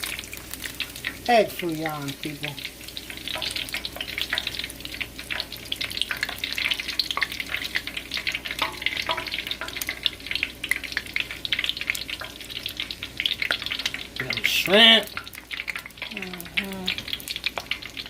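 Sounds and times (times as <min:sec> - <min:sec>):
food sizzling in hot oil: 0:00.0 - 0:18.0.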